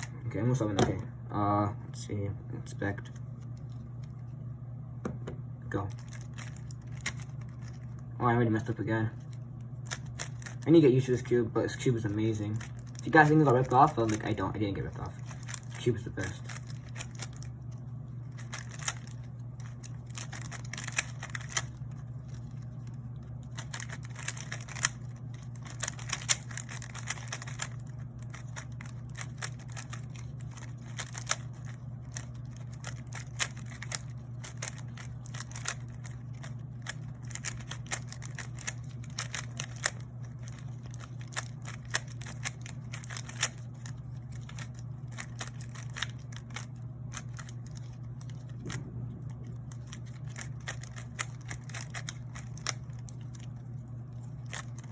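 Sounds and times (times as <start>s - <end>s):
low hum: 0.0s - 54.9s
speed cube plastic clicks: 6.2s - 7.3s, 18.4s - 21.8s, 23.6s - 48.0s, 49.8s - 53.5s.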